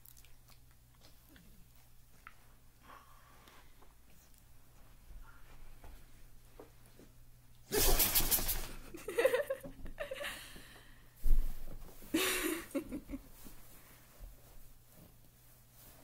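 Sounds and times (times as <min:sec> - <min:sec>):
dog sneezing: 0:07.7 - 0:08.8.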